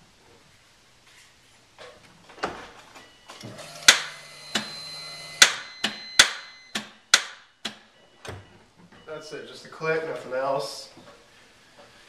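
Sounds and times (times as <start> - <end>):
steady electrical hum: 0.0 - 12.0.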